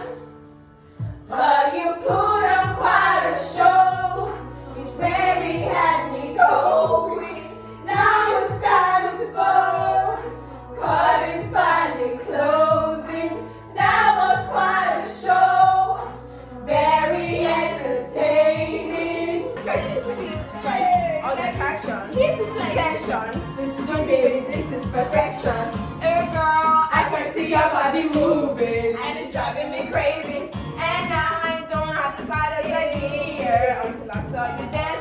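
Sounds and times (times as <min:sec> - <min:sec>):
several voices singing: 0:01.2 - 0:35.0
bass line: 0:02.1 - 0:35.0
steady beat: 0:19.6 - 0:35.0.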